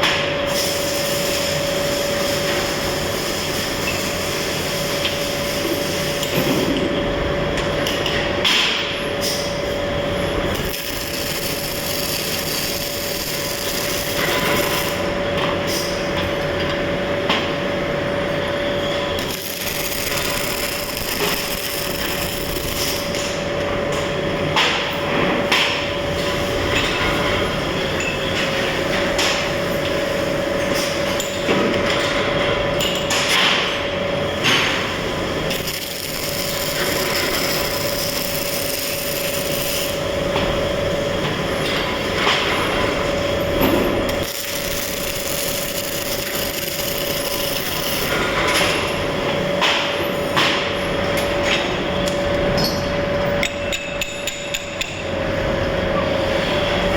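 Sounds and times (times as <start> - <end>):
steady hum: 4.9 - 25.7, 32.4 - 56.0
welding arc crackling: 9.4 - 15.2, 17.9 - 24.1, 33.8 - 49.4.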